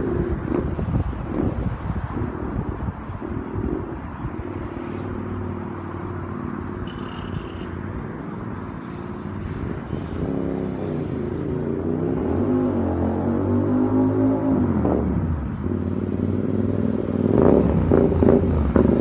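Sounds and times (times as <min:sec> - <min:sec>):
motorcycle engine running: 0:16.3 - 0:19.0.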